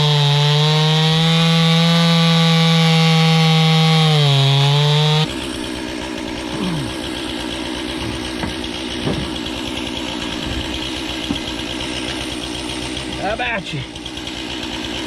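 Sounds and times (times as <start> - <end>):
chainsaw idling: 0.0 - 15.0.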